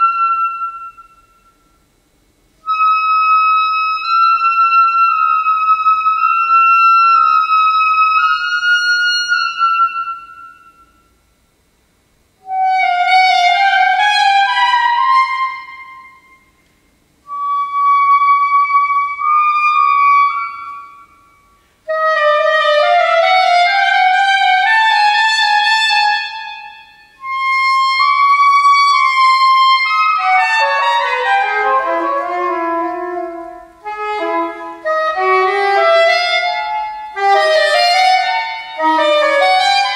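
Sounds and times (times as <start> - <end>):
solo saxophone playing: 12.4 - 16.3, 17.2 - 39.9.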